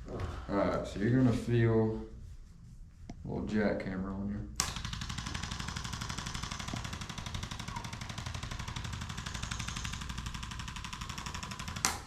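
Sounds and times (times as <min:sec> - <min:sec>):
electric percussion device tapping: 0:04.6 - 0:12.0
low motor hum: 0:04.6 - 0:12.0.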